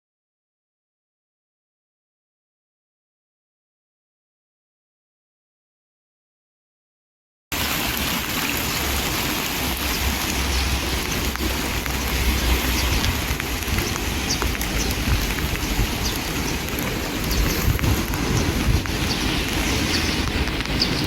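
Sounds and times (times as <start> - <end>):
steady rain: 7.5 - 21.0
drops ticking: 9.8 - 21.0
low rumble: 10.1 - 21.0.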